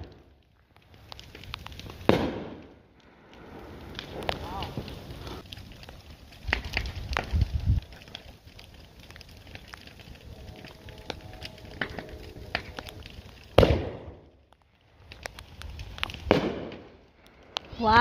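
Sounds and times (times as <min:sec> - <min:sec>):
fireworks crackling and popping: 0:00.0 - 0:18.0
loud firework bang: 0:02.1 - 0:02.6, 0:13.6 - 0:14.2, 0:16.3 - 0:16.8.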